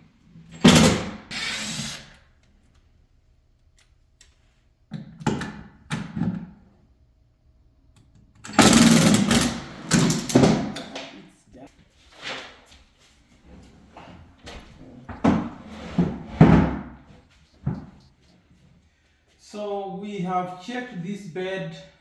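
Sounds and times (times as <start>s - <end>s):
power drill driving screws: 0.6s - 2.2s.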